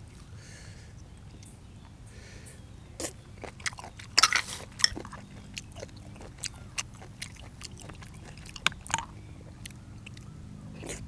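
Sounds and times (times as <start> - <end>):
person chewing and crunching food: 3.0 - 11.0.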